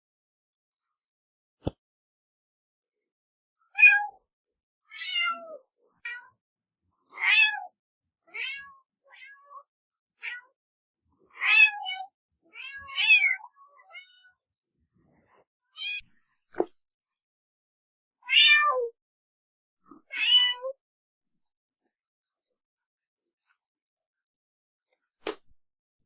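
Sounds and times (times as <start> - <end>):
cat meowing: 4.9 - 5.6, 7.2 - 7.7, 8.3 - 9.5, 11.4 - 14.3, 18.2 - 18.9, 20.1 - 20.8.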